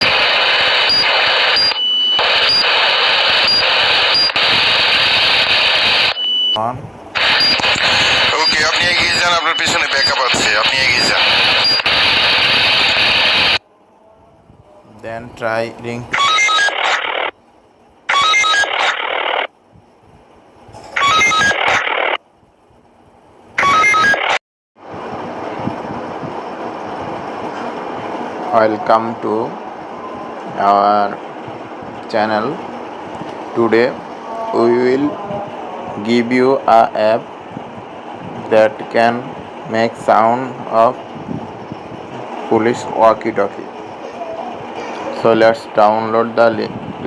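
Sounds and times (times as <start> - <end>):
quick radio beeps: 0.0 - 6.6, 7.2 - 13.6, 16.2 - 17.3, 18.1 - 19.5, 21.0 - 22.2, 23.6 - 24.4
radio static hiss: 0.0 - 13.6, 15.3 - 17.4, 18.1 - 19.5, 21.0 - 22.2, 23.6 - 24.4.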